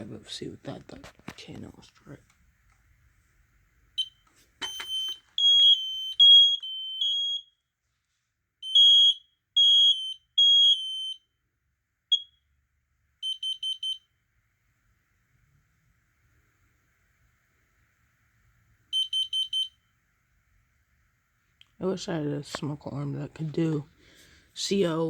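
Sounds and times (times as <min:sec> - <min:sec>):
alarm click: 0:04.0 - 0:07.4
alarm chirps: 0:04.0 - 0:07.6, 0:08.6 - 0:11.3, 0:12.1 - 0:12.4, 0:13.2 - 0:14.1, 0:18.9 - 0:19.9
fire alarm beeps: 0:04.0 - 0:07.6, 0:08.6 - 0:11.4, 0:12.1 - 0:12.5, 0:13.2 - 0:14.2, 0:18.9 - 0:19.9.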